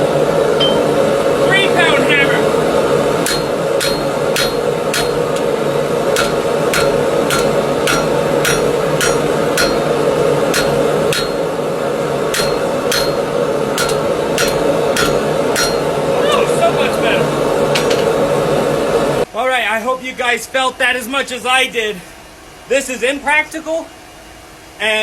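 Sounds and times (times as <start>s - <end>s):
steady hum: 0.0s - 19.4s
hammer striking anvil: 0.6s - 1.1s, 3.2s - 5.5s, 6.1s - 16.1s, 17.7s - 18.2s.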